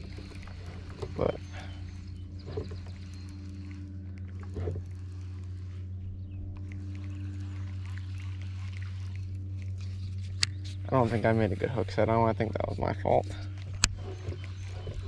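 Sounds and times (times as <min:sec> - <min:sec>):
electric motor humming: 0:00.0 - 0:15.0.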